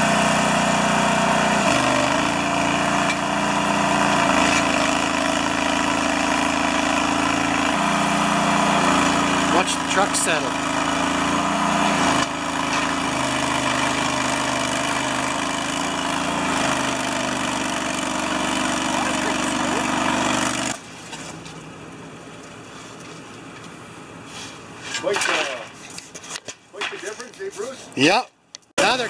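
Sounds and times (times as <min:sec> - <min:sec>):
truck engine running: 0:00.0 - 0:28.0.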